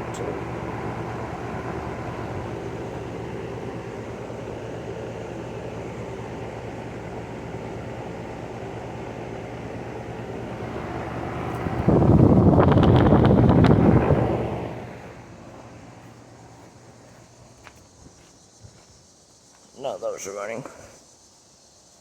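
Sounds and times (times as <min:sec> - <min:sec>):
air conditioning units humming: 0:00.0 - 0:22.0
wind buffeting microphone: 0:11.2 - 0:14.9.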